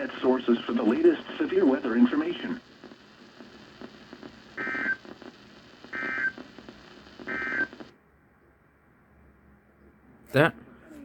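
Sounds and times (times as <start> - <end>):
faint radio hiss: 0.0 - 8.0.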